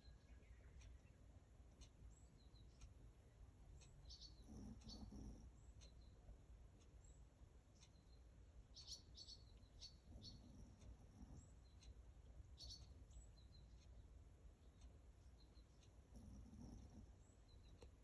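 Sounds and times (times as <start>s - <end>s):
high chirps and clicks: 0.0s - 18.0s
dog snoring softly: 4.4s - 5.6s, 16.1s - 17.2s.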